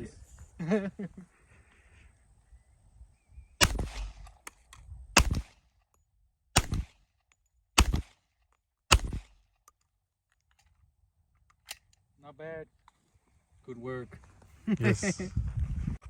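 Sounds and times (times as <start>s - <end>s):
pistol shots with echo: 3.6s - 4.5s, 5.2s - 5.6s, 6.6s - 7.0s, 7.8s - 8.2s, 8.9s - 9.4s.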